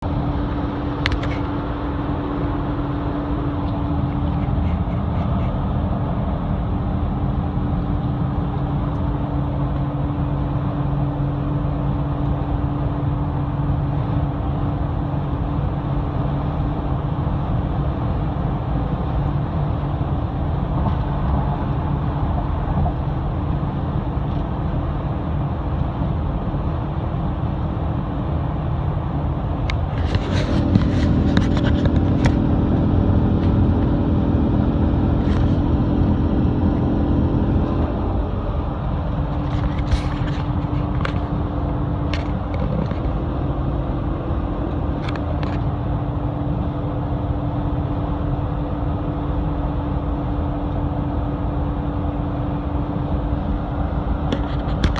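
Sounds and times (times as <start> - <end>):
vehicle hum: 0.0 - 54.9.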